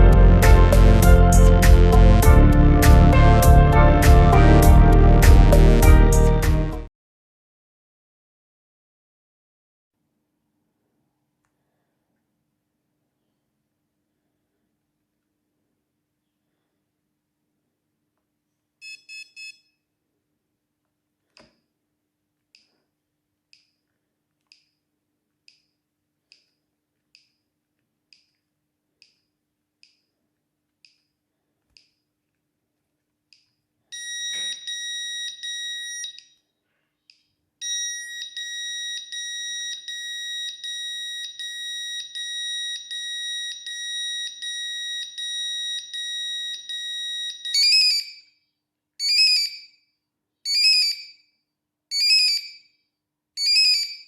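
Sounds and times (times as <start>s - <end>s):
loud electronic chirps: 0.0s - 6.3s, 37.6s - 48.2s, 49.0s - 49.6s, 50.5s - 51.1s, 53.4s - 54.0s.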